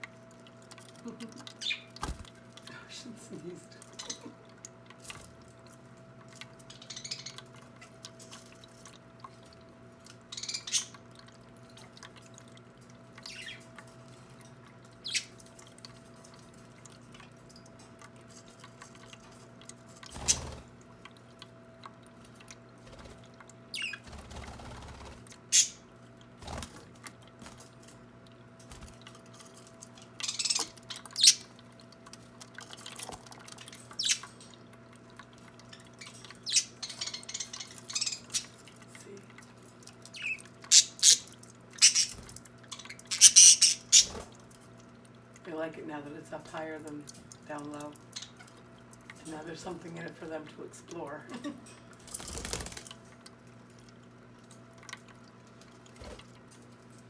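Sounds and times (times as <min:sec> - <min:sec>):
faint water trickle: 0:00.0 - 0:57.0
water pump hum: 0:00.0 - 0:57.0
budgies chirping: 0:06.7 - 0:07.4, 0:13.3 - 0:13.6, 0:41.8 - 0:42.2.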